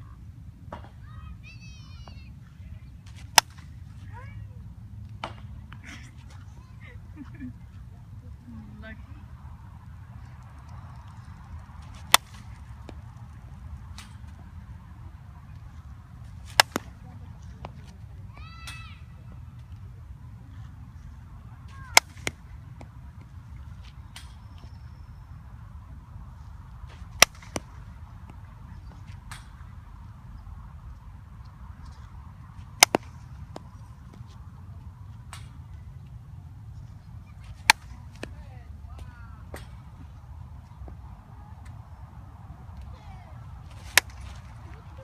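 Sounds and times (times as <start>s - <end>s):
bat cracking a softball: 3.0s - 4.1s, 5.0s - 6.0s, 10.2s - 19.9s, 21.0s - 25.1s, 26.2s - 30.3s, 31.3s - 45.0s
bat striking softball: 3.1s - 3.8s, 5.2s - 5.6s, 10.7s - 14.4s, 16.3s - 19.1s, 21.7s - 23.3s, 26.9s - 28.4s, 32.6s - 34.2s, 37.4s - 38.4s, 43.7s - 45.0s.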